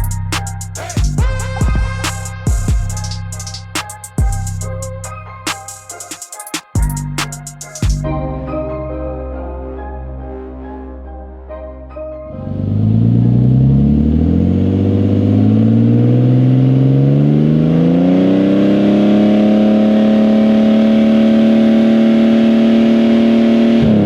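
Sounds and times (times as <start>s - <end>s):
car engine revving: 12.3s - 24.0s.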